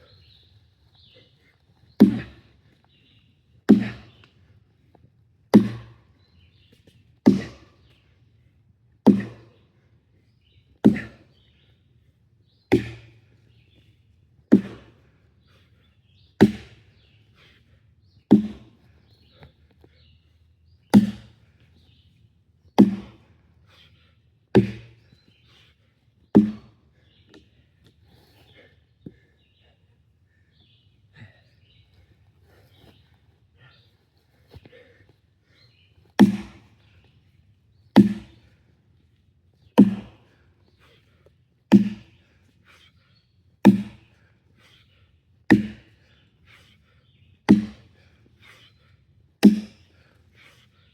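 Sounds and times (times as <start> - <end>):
axe chopping wood: 2.0 - 2.4, 3.7 - 4.3, 5.5 - 6.0, 7.3 - 7.6, 9.1 - 9.5, 10.8 - 11.2, 12.7 - 13.2, 14.5 - 14.9, 16.4 - 16.8, 18.3 - 18.7, 21.0 - 21.3, 22.8 - 23.2, 24.6 - 25.0, 26.4 - 26.7, 36.2 - 36.7, 38.0 - 38.4, 39.8 - 40.2, 41.7 - 42.1, 43.6 - 44.1, 45.5 - 45.9, 47.5 - 47.9, 49.4 - 49.8.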